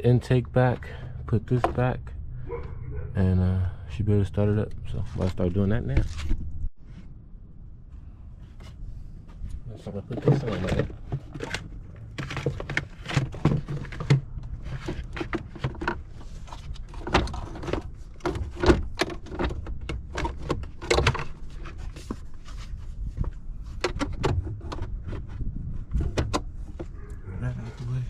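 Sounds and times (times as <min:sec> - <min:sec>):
engine parts clicking and rattling: 0:08.5 - 0:28.0.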